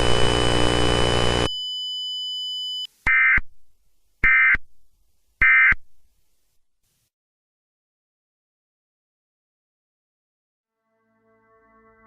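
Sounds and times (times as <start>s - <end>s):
steady electronic drone: 0.0s - 1.5s.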